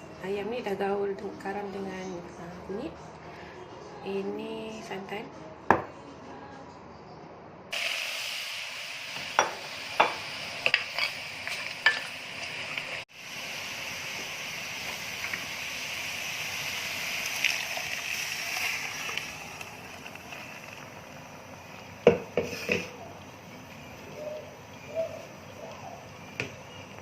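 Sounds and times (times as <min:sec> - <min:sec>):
food sizzling in hot oil: 0:07.7 - 0:27.0.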